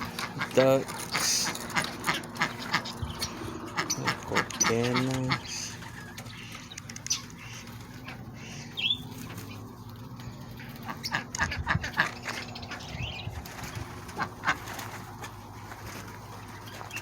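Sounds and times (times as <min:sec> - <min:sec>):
birds flapping wings: 0:00.0 - 0:17.0
bird chirps: 0:05.4 - 0:11.2.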